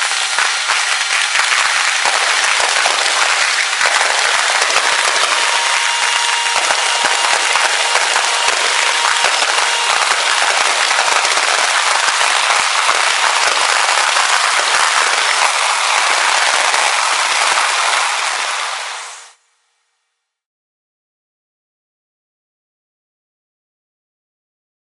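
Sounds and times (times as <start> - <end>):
fireworks crackling and banging: 0.0 - 19.4.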